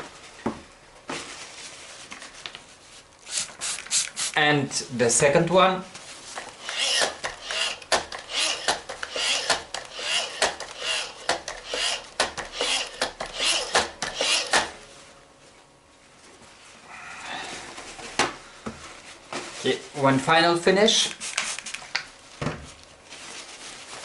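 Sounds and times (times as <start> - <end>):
paper towel wiping plastic: 22.7 - 24.0.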